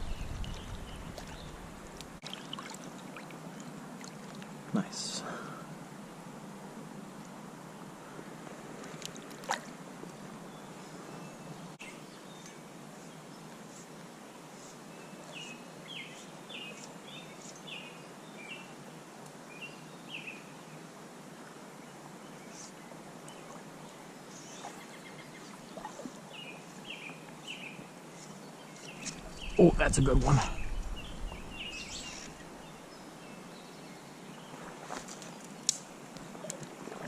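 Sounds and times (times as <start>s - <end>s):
small bird chirping: 28.2s - 33.1s.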